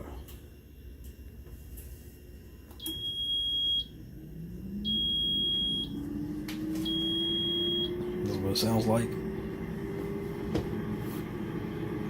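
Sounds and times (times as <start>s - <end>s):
air fryer fan hum rising: 0.0s - 12.0s
long high beeps: 2.8s - 8.1s.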